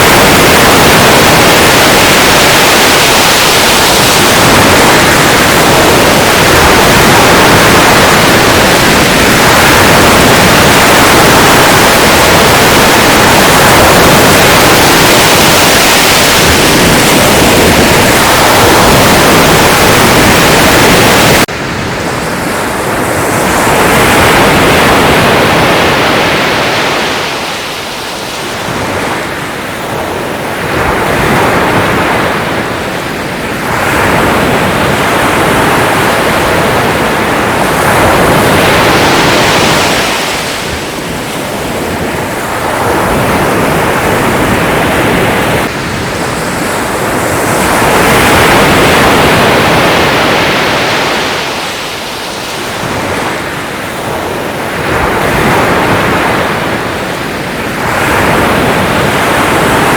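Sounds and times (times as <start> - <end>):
loud even rush: 0.0 - 29.4
sea waves breaking on shore: 0.0 - 59.9.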